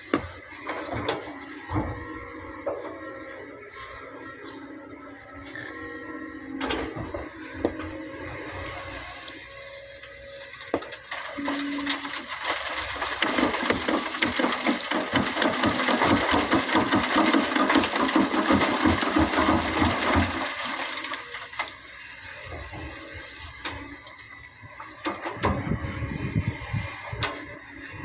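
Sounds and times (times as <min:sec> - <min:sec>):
sand and stones pouring into truck: 0:10.4 - 0:21.9.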